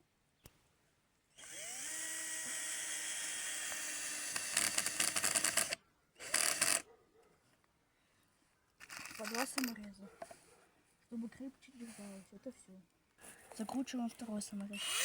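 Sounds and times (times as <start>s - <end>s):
drill driving screw into wood: 1.4s - 6.9s, 8.8s - 9.7s, 14.7s - 15.0s.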